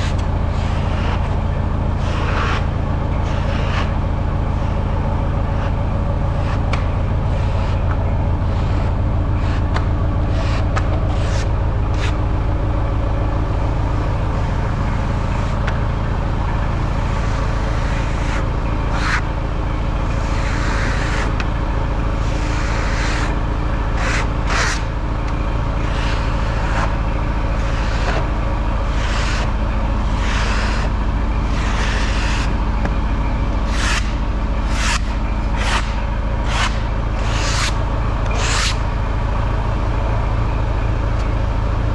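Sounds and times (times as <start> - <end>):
sawmill engine drone: 0.0 - 41.9
saw blade cutting log: 24.0 - 24.9, 33.7 - 38.8.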